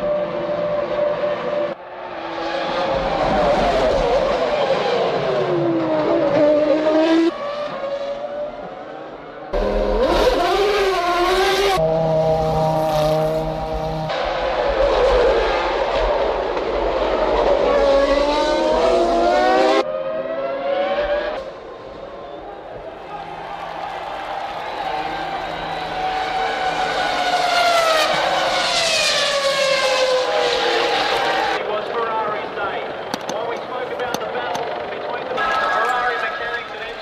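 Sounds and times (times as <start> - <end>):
racing car engines at high revs: 0.0 - 37.0.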